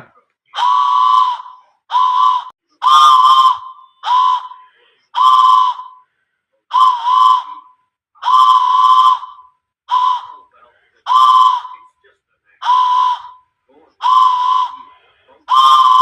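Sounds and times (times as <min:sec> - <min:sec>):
whistle short blasts: 0:00.6 - 0:06.0, 0:06.7 - 0:10.5, 0:11.1 - 0:11.9, 0:12.6 - 0:13.4, 0:14.0 - 0:14.9, 0:15.5 - 0:16.0.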